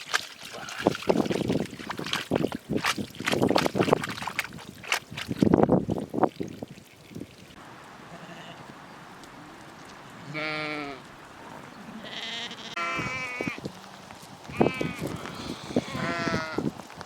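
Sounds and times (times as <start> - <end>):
sheep bleating: 8.1 - 8.7, 10.2 - 11.0, 11.8 - 13.6, 14.5 - 16.6.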